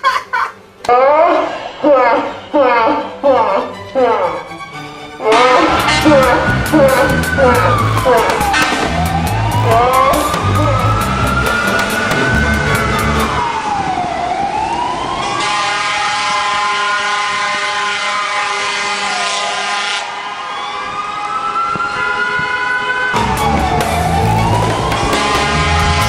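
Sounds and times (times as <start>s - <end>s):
siren wailing: 0.9s - 4.6s, 5.2s - 26.0s
held synth chord: 2.3s - 13.4s, 23.2s - 26.0s
music with heavy beat: 5.5s - 13.4s, 23.2s - 26.0s.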